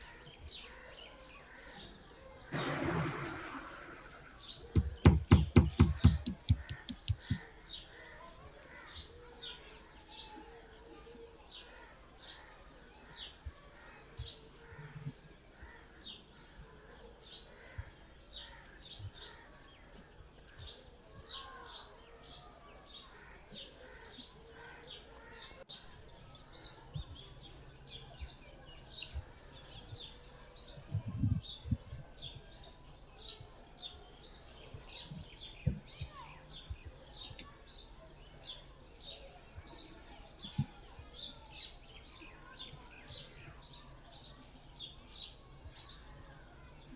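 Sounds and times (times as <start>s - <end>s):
small birds chirping: 0.0s - 46.9s
sharp clicks or knocks: 4.8s - 7.4s.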